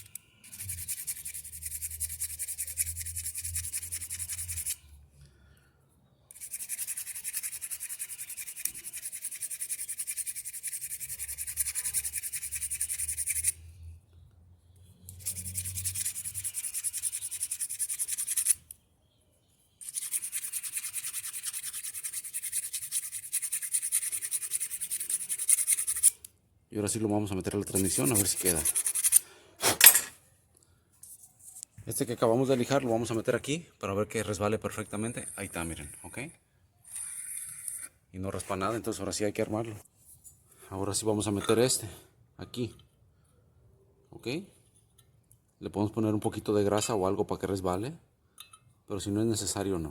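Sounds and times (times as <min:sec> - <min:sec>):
sandpaper rubbing on metal: 0:00.0 - 0:04.8, 0:06.4 - 0:13.5, 0:15.2 - 0:18.6, 0:19.8 - 0:26.2, 0:27.6 - 0:29.9.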